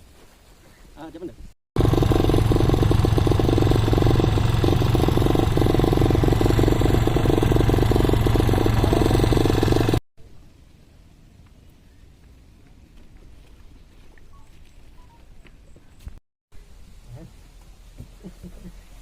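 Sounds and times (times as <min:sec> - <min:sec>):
engine running with rushing noise: 0:01.8 - 0:10.0.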